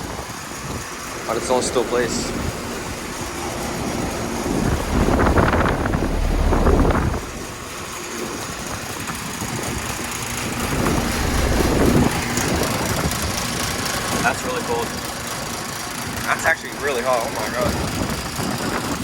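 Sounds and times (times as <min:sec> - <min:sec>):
air conditioner fan and compressor hum: 0:00.0 - 0:08.6, 0:09.5 - 0:12.6.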